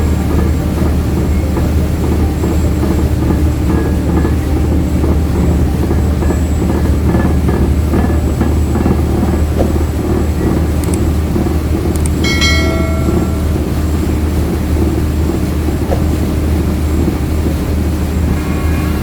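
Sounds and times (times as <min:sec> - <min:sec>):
ferry engine low drone: 0:00.0 - 0:19.0
brief ringing tone: 0:12.2 - 0:14.5.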